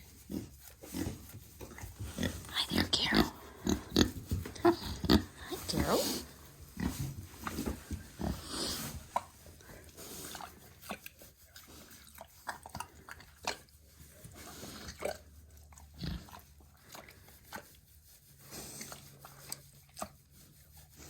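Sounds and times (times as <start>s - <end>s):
pig mouth clicking and smacking: 10.3s - 13.8s, 14.8s - 17.9s, 18.8s - 20.3s.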